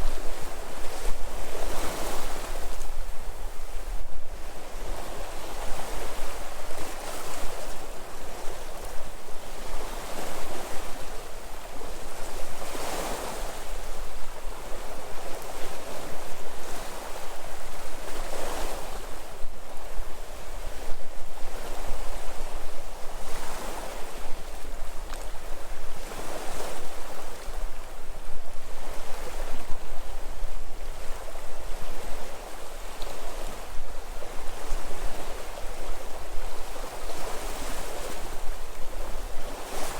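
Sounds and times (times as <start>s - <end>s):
wind on microphone: 0.0s - 39.9s.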